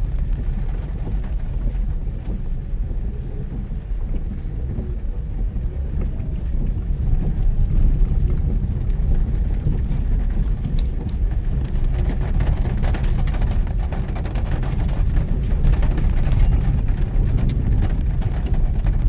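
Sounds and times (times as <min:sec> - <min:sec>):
vehicle engine and tyres rumbling: 0:00.0 - 0:19.0
heavy rain: 0:05.3 - 0:19.0.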